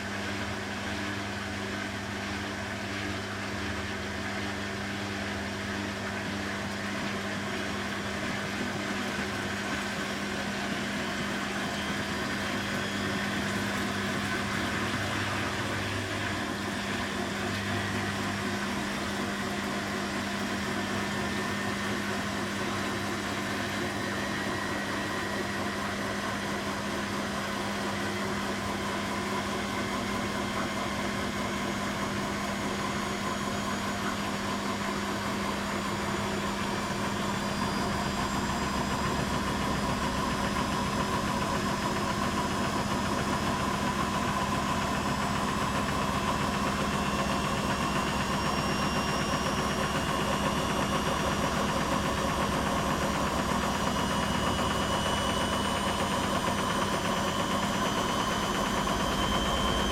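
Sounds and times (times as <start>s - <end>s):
washing machine humming: 0.0s - 59.9s.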